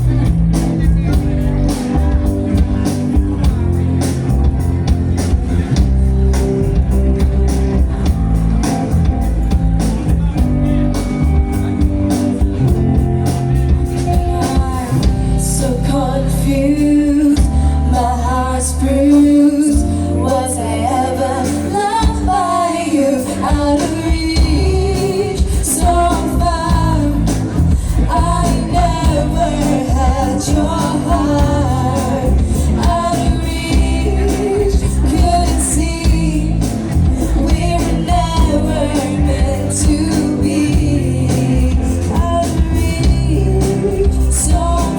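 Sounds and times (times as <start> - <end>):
live band playing pop: 0.0 - 44.9
woman singing: 13.9 - 44.9.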